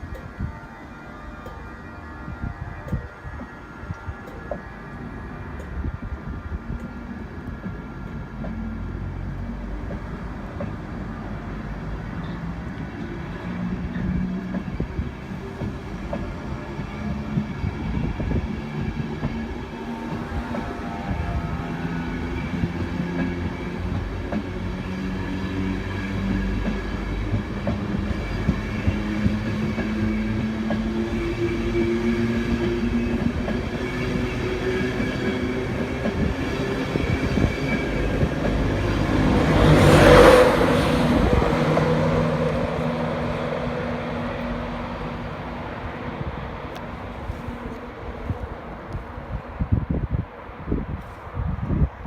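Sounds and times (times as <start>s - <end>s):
wheels clicking over rail joints: 0.0s - 49.3s
train passing: 0.0s - 52.0s.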